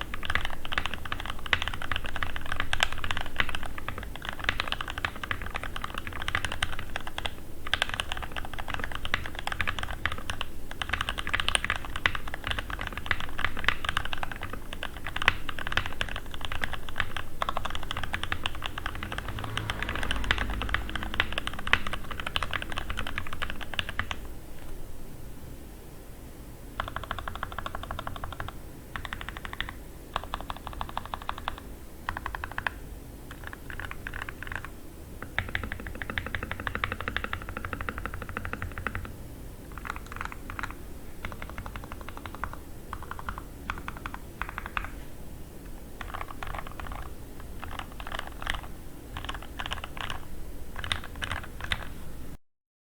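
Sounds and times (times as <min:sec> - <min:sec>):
fast typing on mechanical keyboard: 0:00.0 - 0:24.7, 0:26.8 - 0:44.9, 0:46.0 - 0:52.0.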